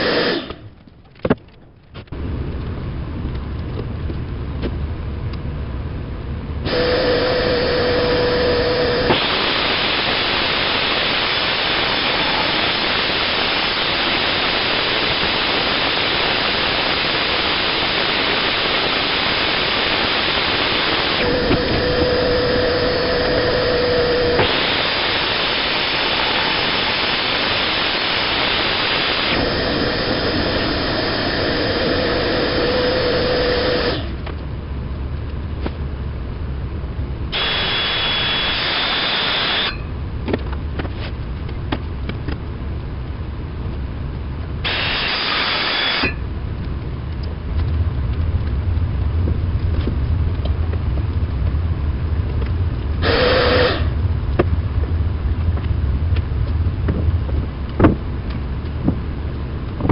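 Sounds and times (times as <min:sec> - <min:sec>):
power tool motor whining: 0:00.0 - 0:00.7, 0:06.6 - 0:34.2, 0:37.3 - 0:39.8, 0:44.6 - 0:46.2, 0:53.0 - 0:54.0
hissing rush: 0:06.6 - 0:34.2, 0:37.3 - 0:39.8, 0:44.6 - 0:46.3, 0:53.0 - 0:54.0.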